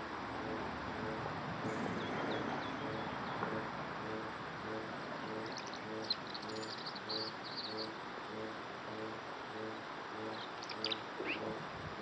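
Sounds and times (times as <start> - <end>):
repeating low note: 0.0 - 12.0
steady hiss: 0.0 - 12.0
small bird chirping: 0.4 - 8.0, 9.0 - 11.6.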